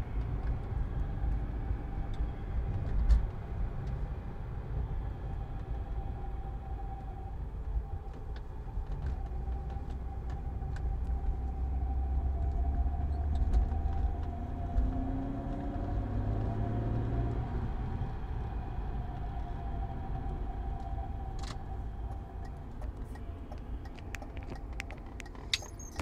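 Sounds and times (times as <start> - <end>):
road and engine rumble: 0.0 - 26.0.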